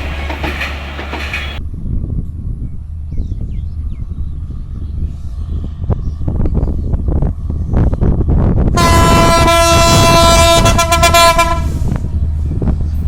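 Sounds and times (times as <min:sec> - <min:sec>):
train rumbling and clattering: 0:00.0 - 0:13.0
diesel train horn blast: 0:08.7 - 0:12.2.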